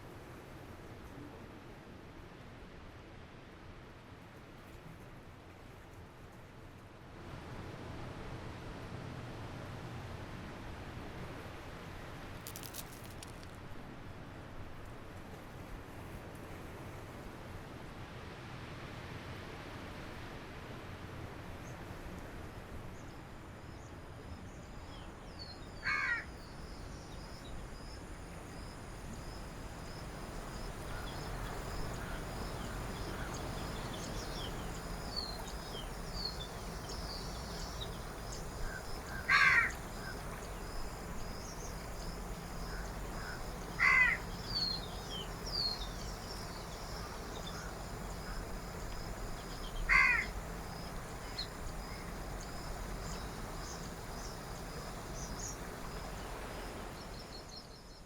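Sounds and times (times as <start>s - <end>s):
low background hum: 7.3s - 58.0s
small birds chirping: 29.2s - 56.4s
large bird harsh calls: 38.6s - 40.2s, 42.7s - 44.8s, 49.7s - 50.4s.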